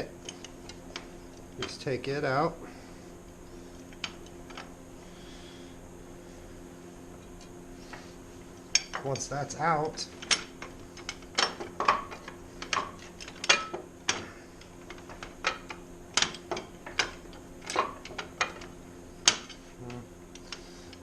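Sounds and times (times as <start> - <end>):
metal clinks and knocks: 10.1 - 14.2.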